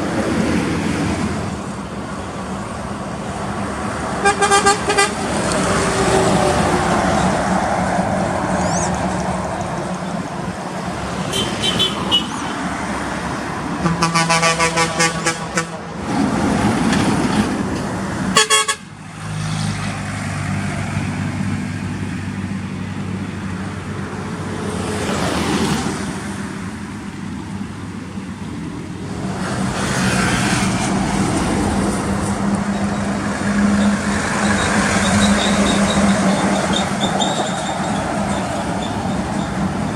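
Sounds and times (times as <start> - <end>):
diesel truck engine droning: 0.0 - 16.4, 17.3 - 39.9
heavy trucks on highway: 0.0 - 39.9
vehicle horn pulses: 4.2 - 5.2, 11.3 - 12.6, 13.8 - 15.8, 18.4 - 18.9.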